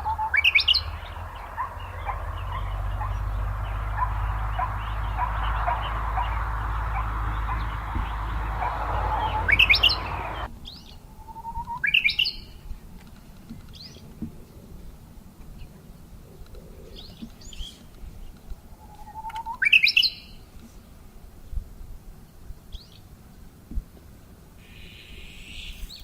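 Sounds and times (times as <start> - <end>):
low rumble: 0.0 - 10.5
loud bird song phrase: 0.0 - 11.0
small birds calling: 0.0 - 12.4.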